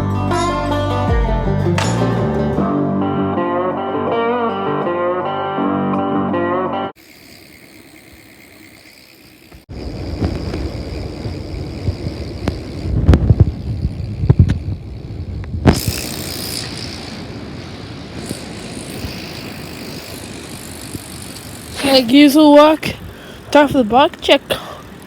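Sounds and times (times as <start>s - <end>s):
mountain bike rumbling: 2.7s - 25.0s
bike tyre hiss: 7.0s - 22.1s.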